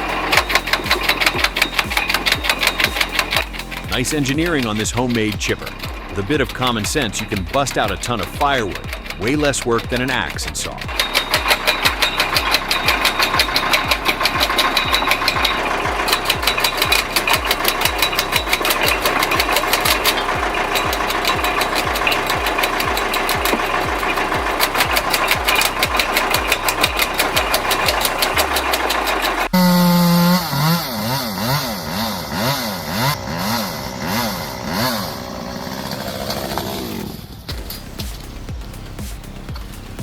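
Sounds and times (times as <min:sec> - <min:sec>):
wood machine thumping: 0:00.0 - 0:30.8
small engine revving: 0:00.0 - 0:40.0.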